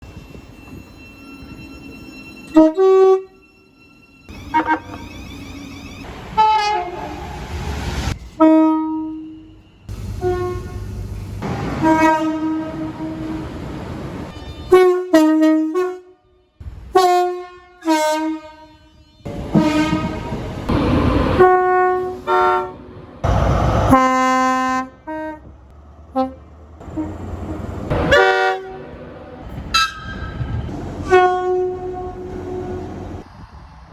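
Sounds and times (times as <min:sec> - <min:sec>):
train running noise: 0:00.0 - 0:16.0, 0:16.6 - 0:33.9
train horn blasts: 0:02.4 - 0:03.4, 0:04.3 - 0:05.1, 0:06.3 - 0:07.5, 0:08.4 - 0:13.6, 0:14.3 - 0:20.6, 0:21.3 - 0:22.8, 0:23.8 - 0:29.0, 0:29.7 - 0:33.1.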